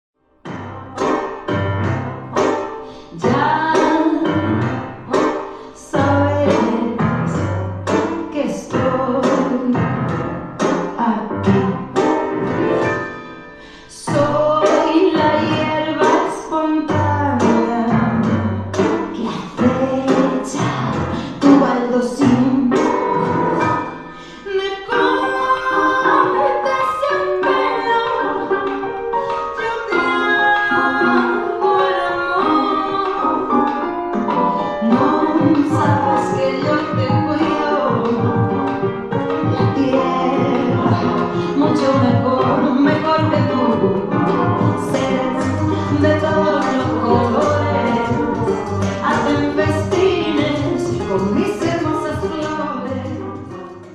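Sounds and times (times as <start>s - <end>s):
music with piano chords and beat: 0.4s - 53.9s
singing voices: 0.5s - 12.3s, 13.6s - 53.9s
voices singing with instruments: 39.5s - 51.2s.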